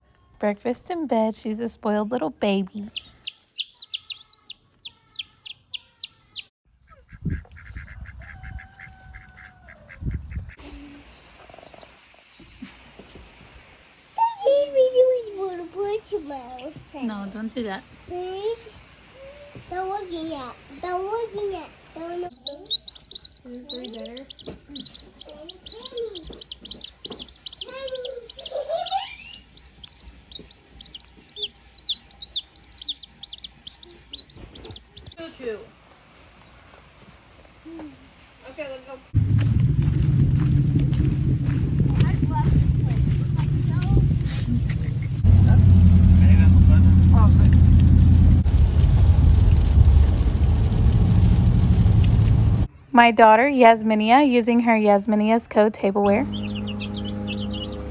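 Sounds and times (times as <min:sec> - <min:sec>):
baby chicks peeping: 0:02.8 - 0:12.6, 0:22.3 - 0:35.2, 0:56.0 - 0:57.9
poultry calling: 0:02.9 - 0:10.6, 0:22.3 - 0:35.2, 0:56.2 - 0:57.9
low thumps: 0:39.2 - 0:52.7
rising lower call: 0:56.2 - 0:57.9.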